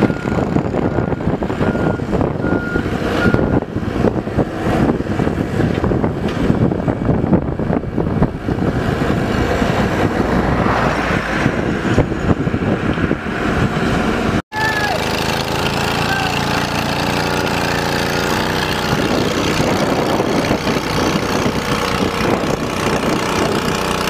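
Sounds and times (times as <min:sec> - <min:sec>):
reversing alarm beeps: 0:00.0 - 0:03.6
diesel engine running: 0:00.0 - 0:24.0.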